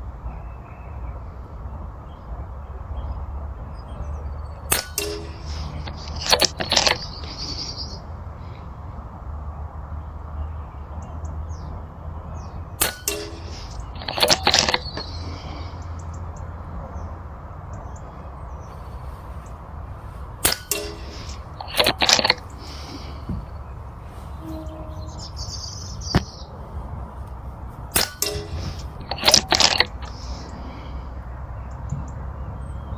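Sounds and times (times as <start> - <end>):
air rifle shots: 4.7 - 7.9, 12.8 - 15.7, 20.3 - 23.4, 27.9 - 31.0
metallic clicks and clanks: 4.7 - 7.9, 12.8 - 16.2, 20.4 - 24.8, 27.2 - 30.6.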